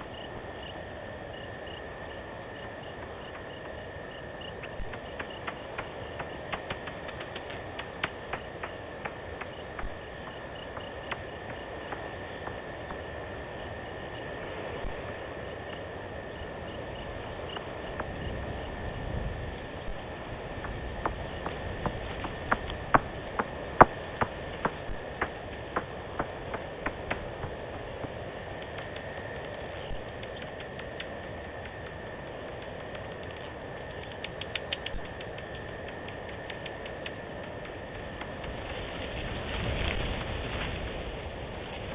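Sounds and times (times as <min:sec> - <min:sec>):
steady high-pitched tone: 0:00.0 - 0:38.3
bats clicking: 0:02.5 - 0:13.1, 0:19.8 - 0:38.6
bats clicking pings: 0:02.7 - 0:13.0.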